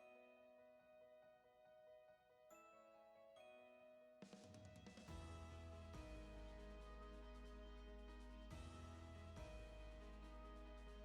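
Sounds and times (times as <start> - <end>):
background music of sustained chords: 5.1 - 11.0.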